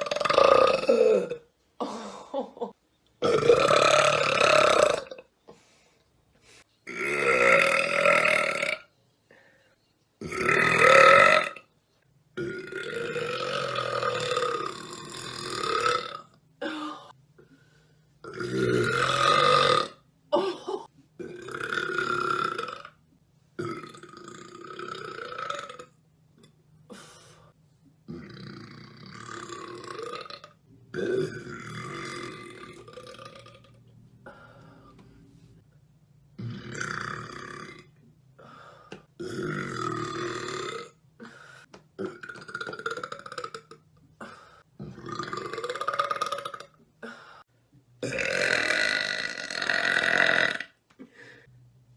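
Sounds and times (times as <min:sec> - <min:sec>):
woman burping: 0:00.0 - 0:05.3, 0:12.4 - 0:17.2, 0:18.2 - 0:22.9, 0:48.0 - 0:50.8.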